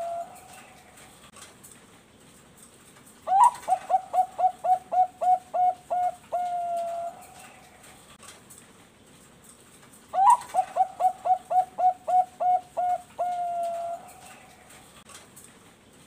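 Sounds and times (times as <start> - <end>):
dove cooing: 0.0 - 1.1, 3.2 - 7.9, 10.1 - 15.0.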